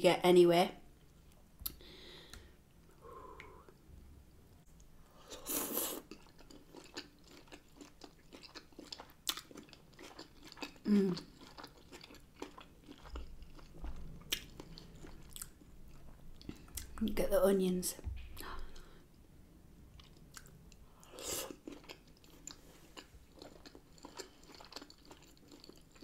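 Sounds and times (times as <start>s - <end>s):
low voice hum: 3.0s - 3.8s
person chewing: 5.2s - 17.0s, 19.9s - 26.0s.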